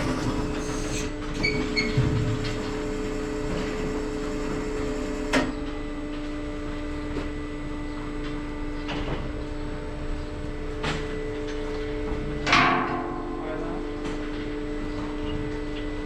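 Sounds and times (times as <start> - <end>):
steady mechanical hum: 0.0 - 16.0.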